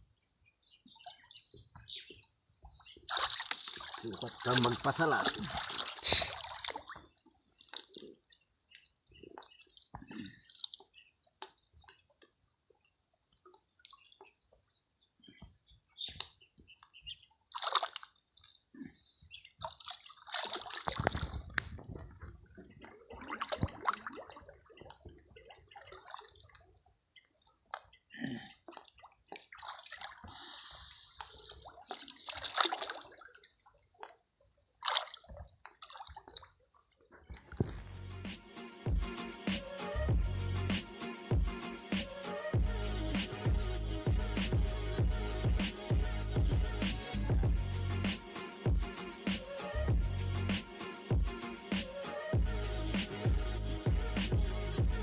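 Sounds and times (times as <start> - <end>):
water splashing and dripping: 2.6 - 12.4, 13.3 - 14.6, 16.2 - 18.8, 19.5 - 38.2.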